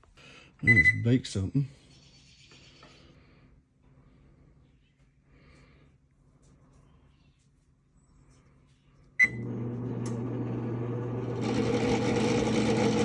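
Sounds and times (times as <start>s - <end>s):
oven beep: 0.6s - 1.2s, 9.2s - 9.8s
fan motor humming: 9.2s - 13.0s.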